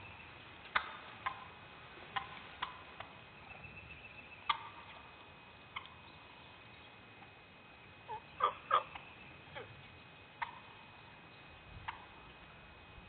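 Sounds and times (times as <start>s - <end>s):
faint high hum: 0.0s - 13.0s
turkey clucks: 0.6s - 3.2s, 4.4s - 6.4s, 8.0s - 11.0s, 11.8s - 12.3s.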